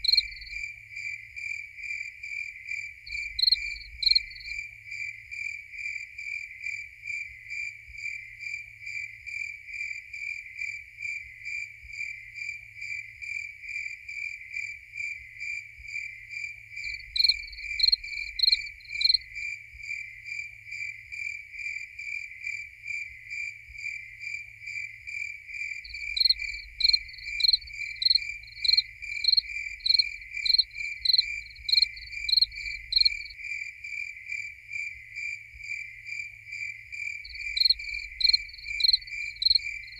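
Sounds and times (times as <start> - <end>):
higher-pitched cricket chirping: 0.0 - 0.8, 2.4 - 5.2, 16.4 - 21.3, 22.5 - 39.9
cricket chirping steadily: 0.0 - 39.9.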